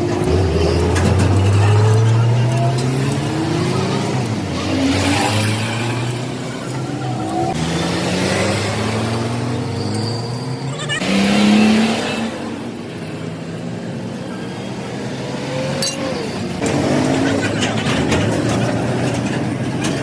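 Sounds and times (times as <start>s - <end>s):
vehicle engine speeding up: 0.0s - 12.9s.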